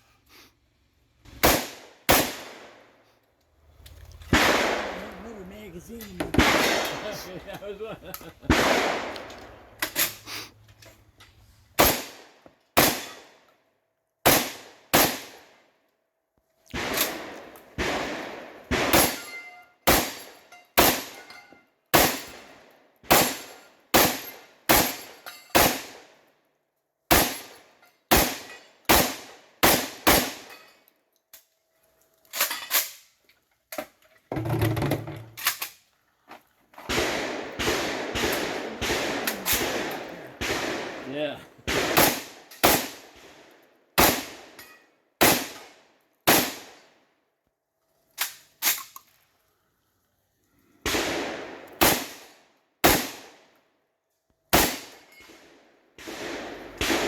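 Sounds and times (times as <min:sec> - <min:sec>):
shotgun shots: 0:01.4 - 0:02.9, 0:04.3 - 0:09.8, 0:11.8 - 0:13.4, 0:14.2 - 0:15.5, 0:16.8 - 0:21.2, 0:21.9 - 0:26.2, 0:27.1 - 0:30.5, 0:36.9 - 0:44.6, 0:45.2 - 0:46.8, 0:50.9 - 0:53.4, 0:54.5 - 0:57.0
rough dense noise: 0:03.6 - 0:11.4, 0:36.3 - 0:41.7.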